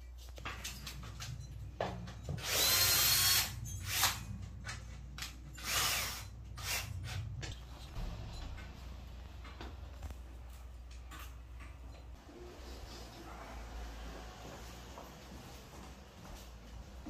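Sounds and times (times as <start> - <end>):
power drill running: 2.3 - 4.2, 5.6 - 6.9.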